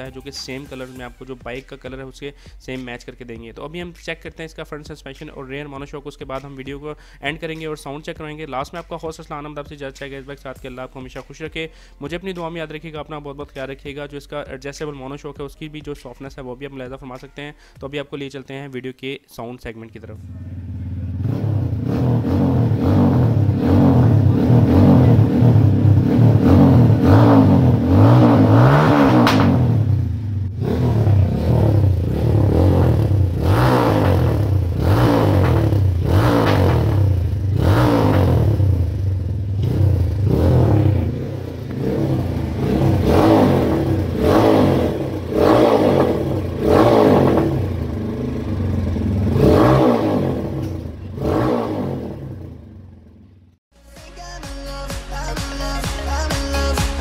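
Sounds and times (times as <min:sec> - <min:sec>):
motorcycle engine revving: 0:20.2 - 0:53.6.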